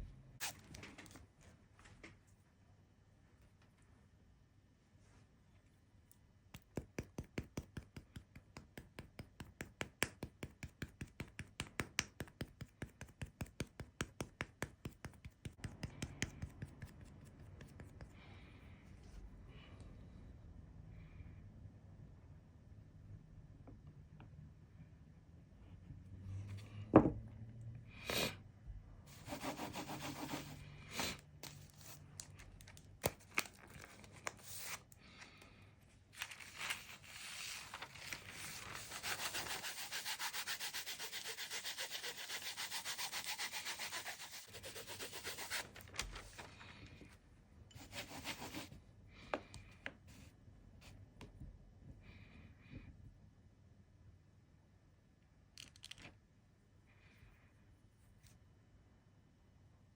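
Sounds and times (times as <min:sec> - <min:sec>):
hands rubbing on hard surface: 0:37.2 - 0:45.6.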